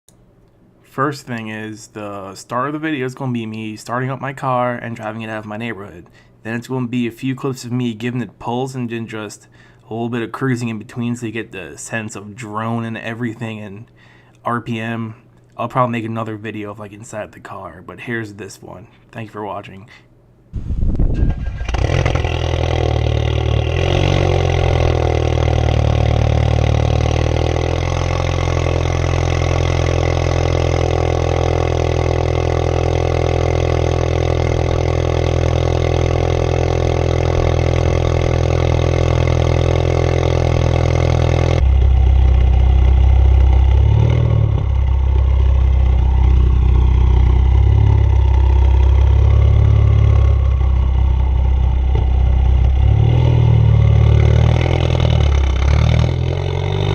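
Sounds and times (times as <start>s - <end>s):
deep exhaust note revving: 20.8s - 56.9s
car engine idling: 21.2s - 56.9s.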